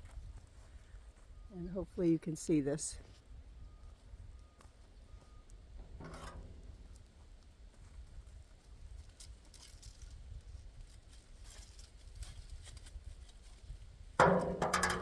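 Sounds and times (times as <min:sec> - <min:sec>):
wind rumble on microphone: 0:00.0 - 0:01.5, 0:03.0 - 0:14.2
person speaking: 0:01.6 - 0:03.0
rustling leaves and vines: 0:07.9 - 0:14.1.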